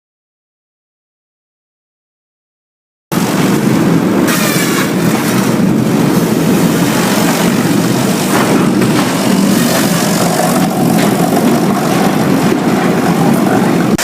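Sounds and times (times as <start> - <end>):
sawmill machinery rumbling: 3.1 - 14.0.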